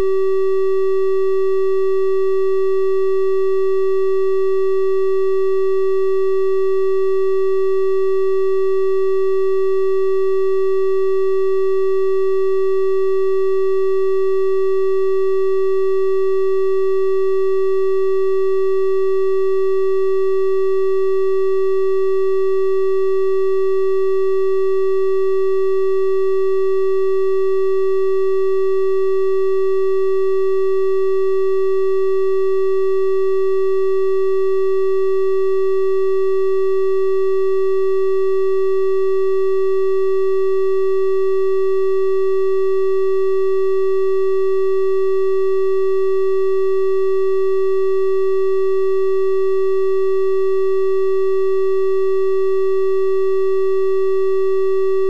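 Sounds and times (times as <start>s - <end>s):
electronic test tone: 0.0s - 55.0s.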